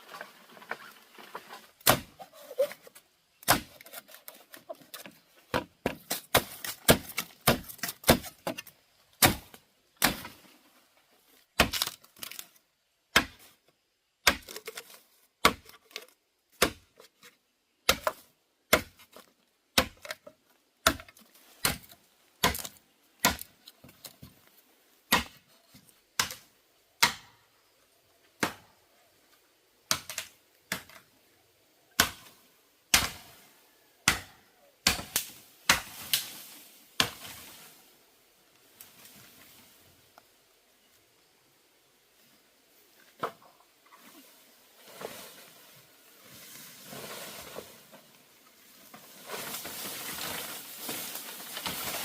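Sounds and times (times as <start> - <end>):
chopping wood: 1.8 - 2.2, 3.4 - 4.3, 4.9 - 10.4, 11.6 - 12.4, 13.1 - 13.5, 14.2 - 17.1, 17.8 - 24.2, 25.1 - 25.4, 26.2 - 27.4, 28.4 - 28.7, 29.9 - 31.0, 32.0 - 32.3, 32.9 - 33.3, 34.0 - 36.2.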